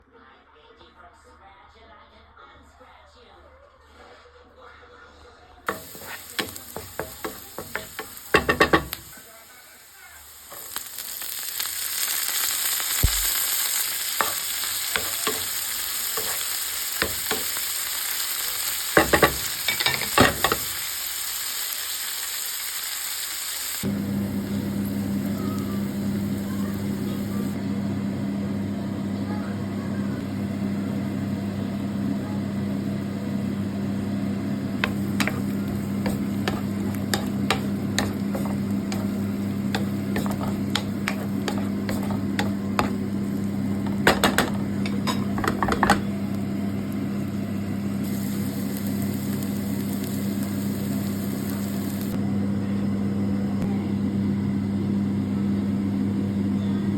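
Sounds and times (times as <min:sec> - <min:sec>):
utensil tapping against pan: 0:05.7 - 0:09.0
omelette sizzling in a pan: 0:05.7 - 0:27.6, 0:34.8 - 0:52.2
constant low hum: 0:23.8 - 0:52.8.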